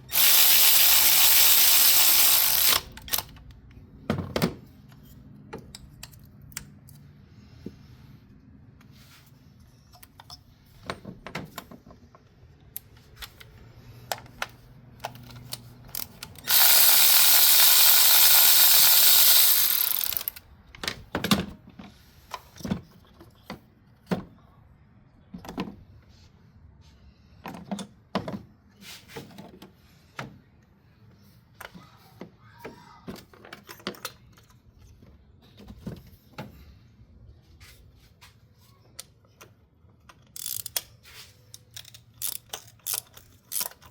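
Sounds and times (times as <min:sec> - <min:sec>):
loud steady tool noise: 0:00.0 - 0:03.0, 0:16.4 - 0:20.4
metal tools clicking and clanking: 0:15.0 - 0:20.4, 0:40.1 - 0:43.9.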